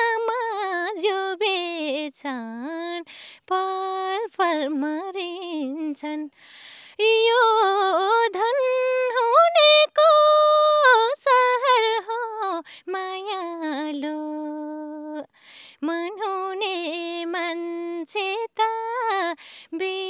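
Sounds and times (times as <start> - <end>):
woman singing unaccompanied: 0.0 - 20.0
woman taking a breath: 3.1 - 3.4, 6.4 - 7.0, 12.6 - 12.9, 15.3 - 15.8, 19.4 - 19.7.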